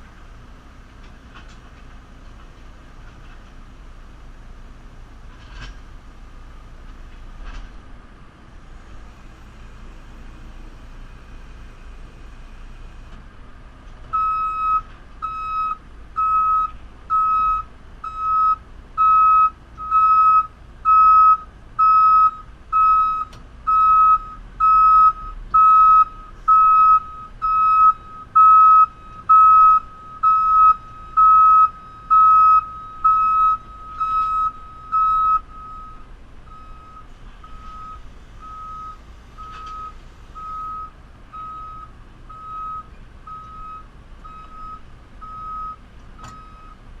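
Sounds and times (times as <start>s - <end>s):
reversing alarm beeps: 14.1s - 46.8s.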